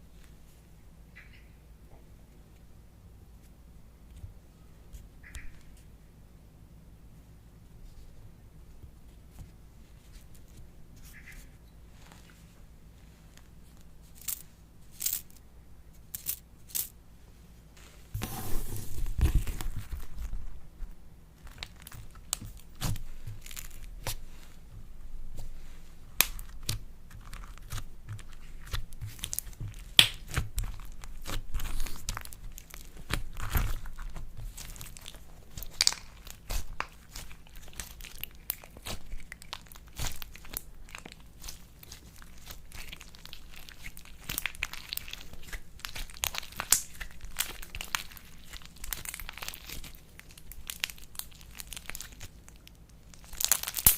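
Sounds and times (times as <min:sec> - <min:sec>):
slime crackling and popping: 0:21.4 - 0:24.3, 0:26.2 - 0:53.9.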